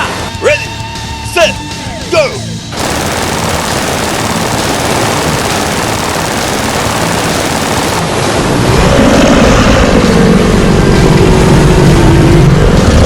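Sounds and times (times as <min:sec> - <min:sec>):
vehicle engine: 0:01.6 - 0:13.0
loud rushing noise: 0:02.7 - 0:13.0.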